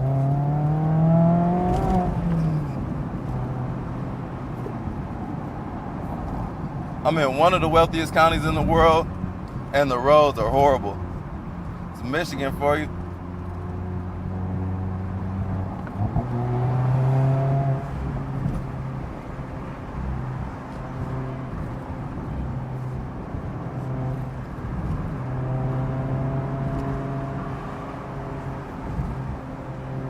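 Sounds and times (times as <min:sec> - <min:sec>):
car engine and exhaust: 0:00.0 - 0:30.0
road noise: 0:00.0 - 0:30.0.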